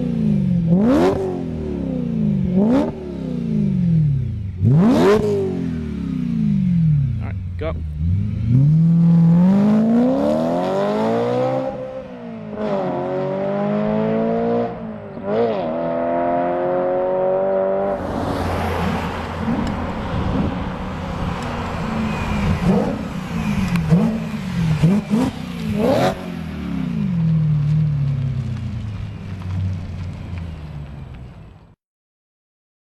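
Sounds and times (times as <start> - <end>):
car engine accelerating hard: 0.0 - 27.3
rushing noise: 17.8 - 25.9.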